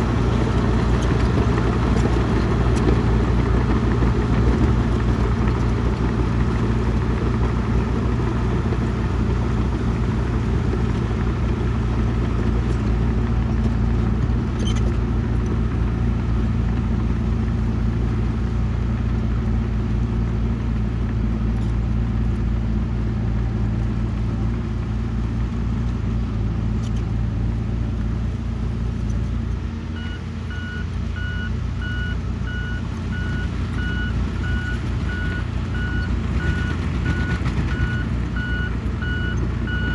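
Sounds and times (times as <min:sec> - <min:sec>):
heavy diesel machine droning: 0:00.0 - 0:39.9
reversing alarm beeping: 0:30.0 - 0:39.9.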